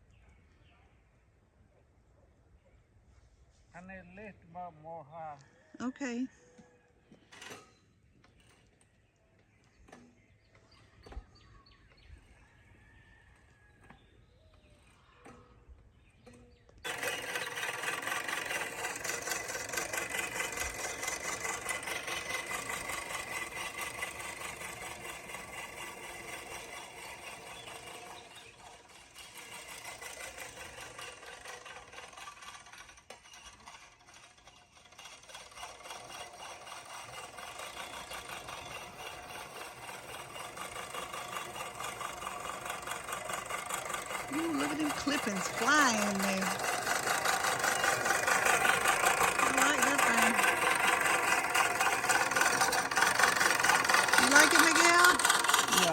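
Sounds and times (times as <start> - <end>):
electric lawn mower whining: 7.1 - 8.9, 16.2 - 55.9.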